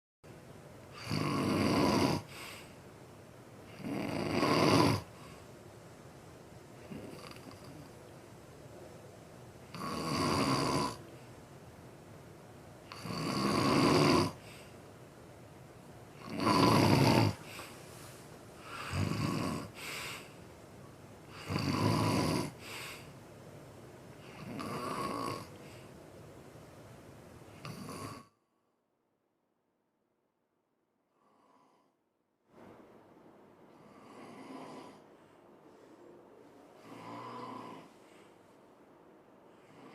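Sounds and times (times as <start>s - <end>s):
quiet breathing: 0.3s - 28.6s, 31.1s - 39.9s
person snoring: 0.9s - 2.7s, 3.6s - 5.3s, 6.8s - 8.0s, 9.7s - 11.1s, 12.8s - 14.7s, 16.2s - 17.8s, 18.6s - 20.4s, 21.3s - 23.1s, 24.2s - 25.9s, 27.6s - 28.4s, 31.1s - 32.0s, 33.7s - 35.1s, 36.8s - 38.3s, 39.5s - 39.9s.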